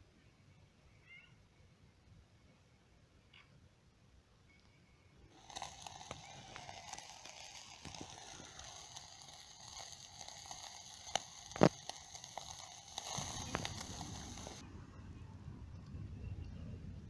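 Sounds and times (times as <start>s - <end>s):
sharp fire pops: 5.3s - 14.6s
steady fire hiss: 5.3s - 14.6s
wood fire crackling: 5.3s - 14.6s.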